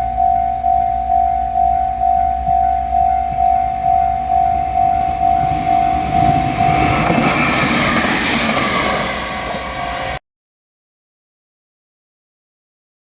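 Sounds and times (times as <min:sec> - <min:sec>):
electric train passing: 0:00.0 - 0:10.2
level-crossing bell clanging: 0:00.0 - 0:10.2.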